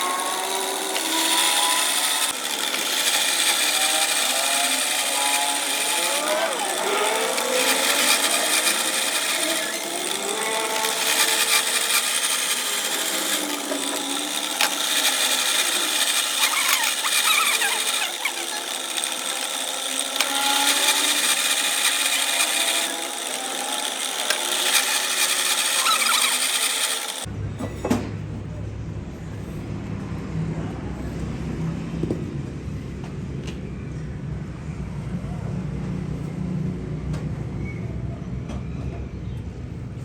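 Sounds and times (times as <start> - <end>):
power tool grinding: 0.0 - 27.3.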